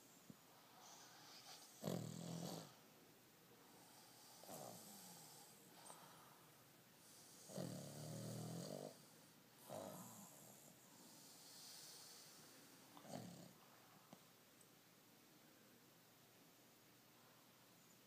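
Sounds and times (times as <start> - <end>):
dog snoring: 0.8 - 2.8, 3.8 - 6.0, 7.1 - 12.3, 13.0 - 13.6.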